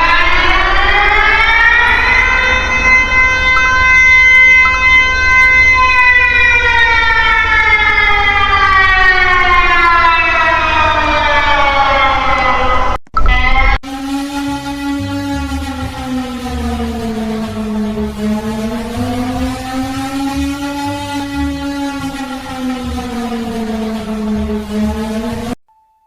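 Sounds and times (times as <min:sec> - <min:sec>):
siren winding up and down: 0:00.0 - 0:25.6
low rumble: 0:13.9 - 0:25.6.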